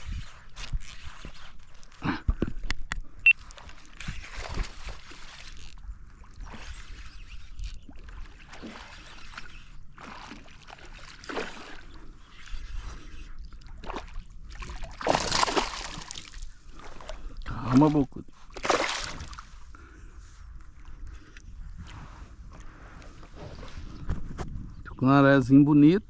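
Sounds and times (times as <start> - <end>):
water sloshing and splashing: 3.3 - 19.7.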